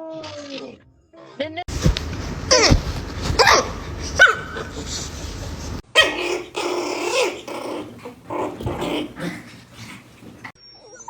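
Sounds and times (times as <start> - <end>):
dog barking: 3.4 - 4.9, 5.9 - 7.5
dog growling: 4.2 - 10.6.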